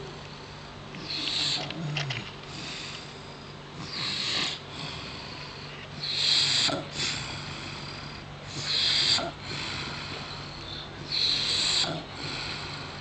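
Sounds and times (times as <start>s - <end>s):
man snoring: 11.1s - 13.0s.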